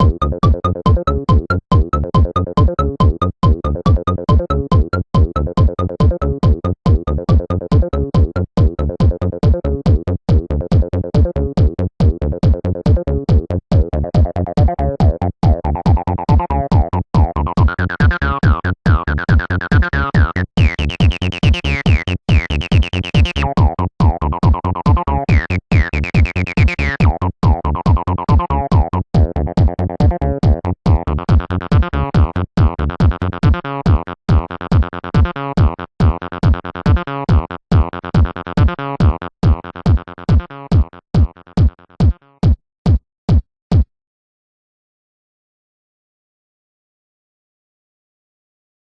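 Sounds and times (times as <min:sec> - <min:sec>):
repeating synthesizer pattern: 0:00.0 - 0:08.4, 0:19.3 - 0:23.6
drum machine fast beat: 0:00.0 - 0:43.9.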